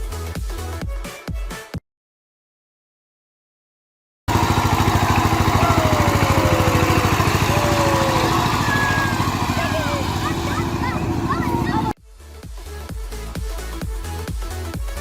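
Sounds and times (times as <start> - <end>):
engine running: 4.3 - 12.0.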